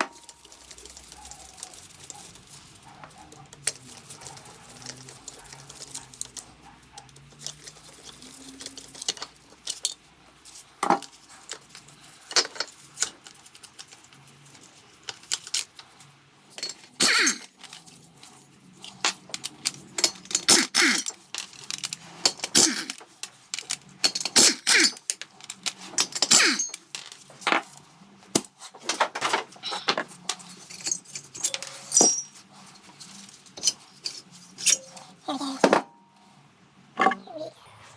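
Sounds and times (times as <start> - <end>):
metal tools clinking: 0.0 - 15.8, 16.4 - 36.2.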